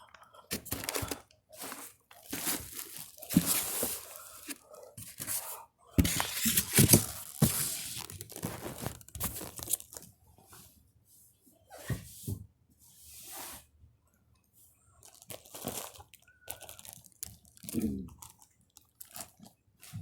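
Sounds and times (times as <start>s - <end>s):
packaging crinkling and rustling: 0.5s - 10.1s, 15.0s - 20.0s.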